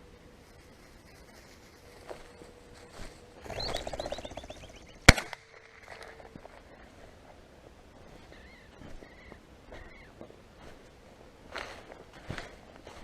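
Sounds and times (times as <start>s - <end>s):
whirr of wingbeats: 0.0s - 5.0s
loud shotgun shot: 5.1s - 5.4s.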